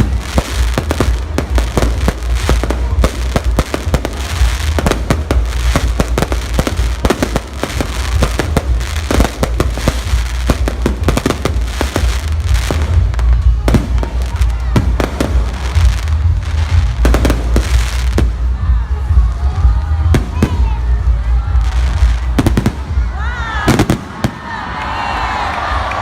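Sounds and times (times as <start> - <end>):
fireworks bangs and crackling: 0.0 - 24.8.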